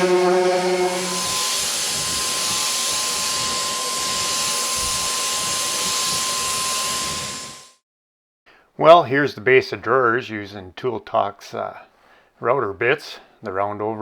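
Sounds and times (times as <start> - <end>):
wood router running: 0.0 - 7.8.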